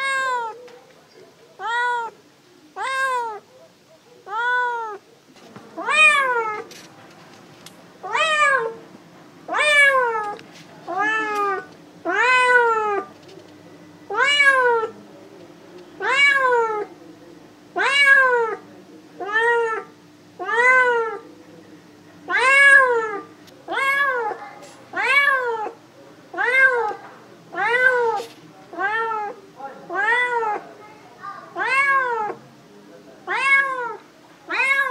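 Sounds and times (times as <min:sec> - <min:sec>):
cat meowing: 0:00.0 - 0:00.6, 0:01.6 - 0:02.2, 0:02.8 - 0:03.4, 0:04.2 - 0:05.0, 0:05.8 - 0:06.7, 0:08.0 - 0:08.8, 0:09.5 - 0:13.1, 0:14.1 - 0:14.9, 0:16.0 - 0:16.9, 0:17.8 - 0:18.6, 0:19.2 - 0:21.2, 0:22.3 - 0:30.6, 0:31.5 - 0:32.4, 0:33.3 - 0:34.9.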